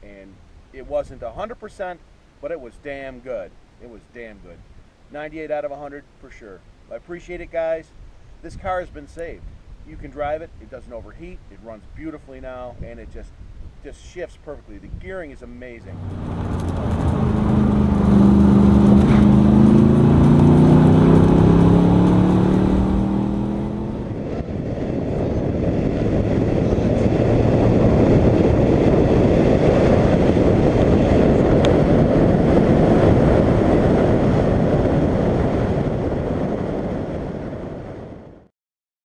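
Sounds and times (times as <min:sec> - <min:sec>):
car engine accelerating: 0:15.8 - 0:24.3
road noise: 0:15.8 - 0:38.0.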